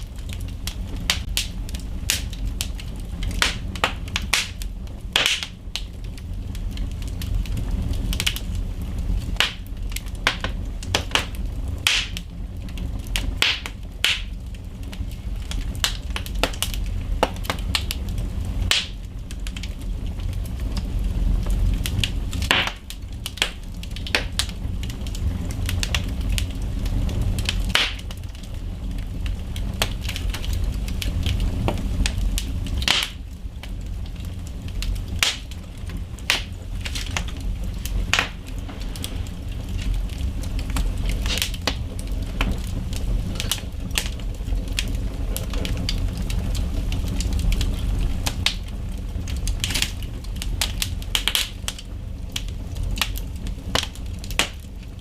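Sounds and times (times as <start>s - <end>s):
low rumble: 0.0s - 55.0s
wood fire crackling and popping: 0.0s - 55.0s.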